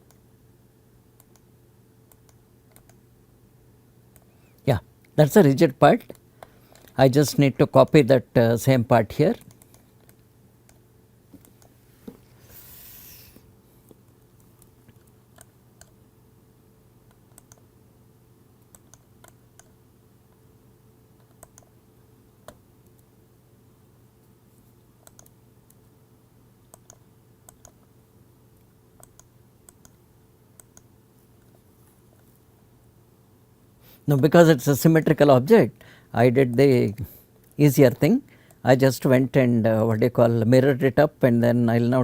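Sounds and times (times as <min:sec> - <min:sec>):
low electrical hum: 0:00.0 - 0:42.0
short hiss: 0:12.3 - 0:13.5
mouse and keyboard clicks: 0:17.1 - 0:17.7, 0:21.2 - 0:21.7, 0:25.0 - 0:25.8, 0:26.7 - 0:27.9.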